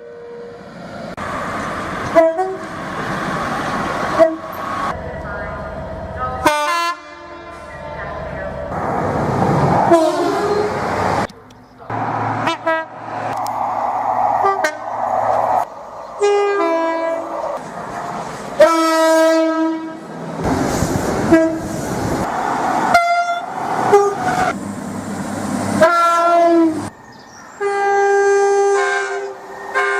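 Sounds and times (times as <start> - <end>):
trains running hiss and rumble: 0.8 - 6.7, 7.6 - 19.2, 20.1 - 29.9
train horn blasts: 2.1 - 2.7, 4.1 - 4.6, 6.4 - 8.2, 9.9 - 10.8, 12.4 - 13.0, 16.2 - 17.3, 18.6 - 20.1, 21.3 - 21.7, 22.9 - 24.5, 25.8 - 26.8, 27.6 - 29.9.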